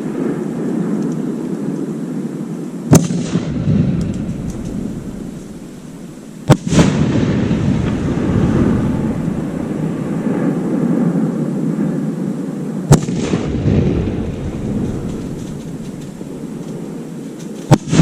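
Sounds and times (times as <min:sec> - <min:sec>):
continuous low rumble: 0:00.0 - 0:18.0
firework shells bursting: 0:02.9 - 0:10.2, 0:14.2 - 0:18.0
smaller firework crack: 0:02.9 - 0:10.6, 0:12.9 - 0:18.0.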